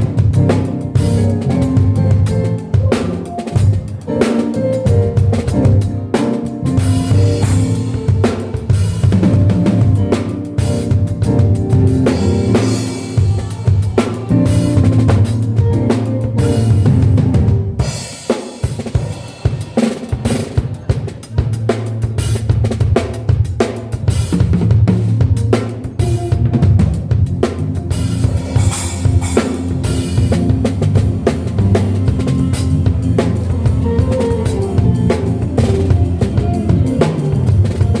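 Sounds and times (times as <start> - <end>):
low bass line: 0.0 - 3.8, 24.5 - 38.0
drum kit playing: 0.0 - 38.0.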